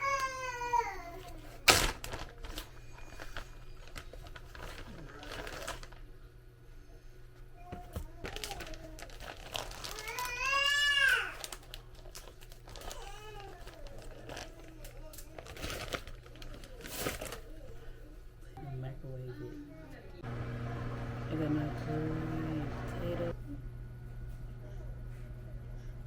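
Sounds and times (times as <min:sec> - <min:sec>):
small child crying: 0:00.0 - 0:01.4, 0:09.8 - 0:11.6, 0:12.8 - 0:14.1.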